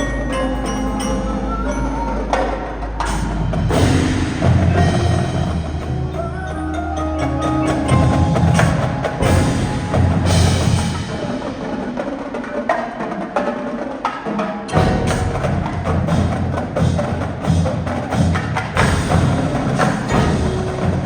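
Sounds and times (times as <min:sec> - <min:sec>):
ringing mallet percussion: 0:00.0 - 0:12.4, 0:14.7 - 0:21.0
low drums: 0:00.0 - 0:14.0, 0:14.7 - 0:21.0
drum and wood block strokes: 0:02.3 - 0:13.6.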